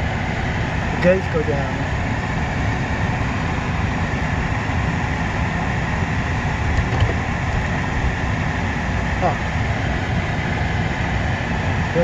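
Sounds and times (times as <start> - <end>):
engine rumble: 0.0 - 12.0.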